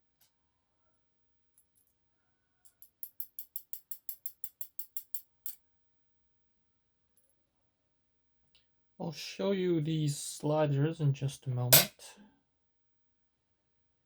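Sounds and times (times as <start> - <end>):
small sharp metal clicks: 2.7 - 5.6.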